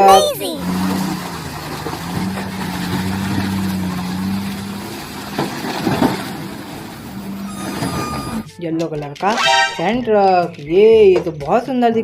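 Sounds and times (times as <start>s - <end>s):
truck engine humming: 0.0s - 8.6s.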